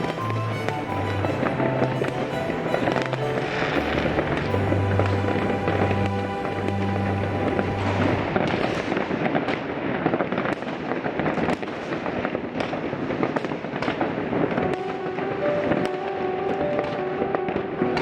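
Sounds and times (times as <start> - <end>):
fireworks crackling and banging: 7.7 - 18.0.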